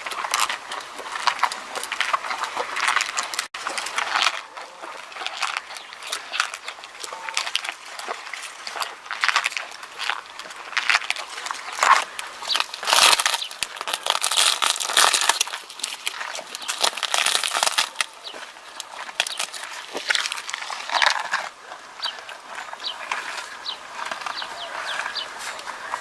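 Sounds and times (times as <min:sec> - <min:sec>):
camel chewing cactus: 0:00.0 - 0:26.0.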